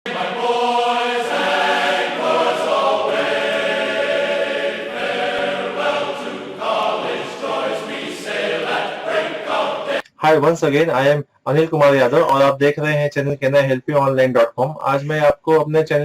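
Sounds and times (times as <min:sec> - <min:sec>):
choir singing held chords: 0:00.1 - 0:10.2.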